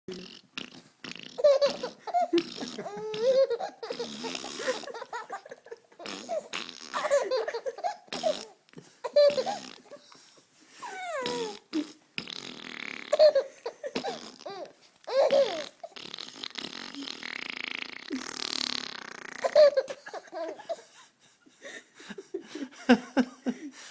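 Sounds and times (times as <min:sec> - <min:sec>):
fart noises: 0:00.1 - 0:08.6, 0:09.2 - 0:09.9, 0:11.0 - 0:19.8
baby giggling: 0:01.3 - 0:10.0, 0:12.9 - 0:16.1, 0:19.4 - 0:21.0.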